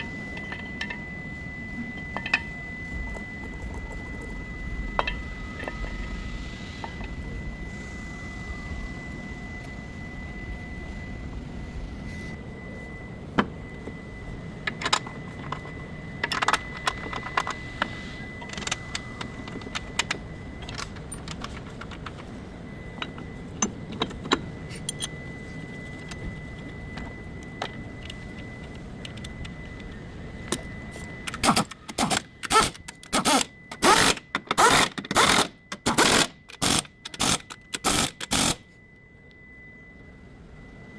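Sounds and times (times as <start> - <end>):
steady hum: 0.0 - 40.9
loud rattling strokes: 31.3 - 38.6.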